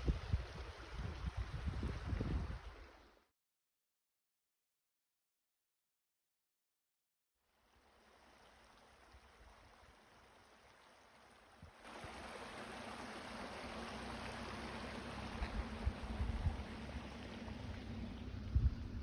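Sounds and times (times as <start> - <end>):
wind on microphone: 0.0 - 2.7, 15.4 - 16.7, 18.4 - 19.0
low rumbling wind gusts: 0.0 - 2.9, 11.9 - 19.0.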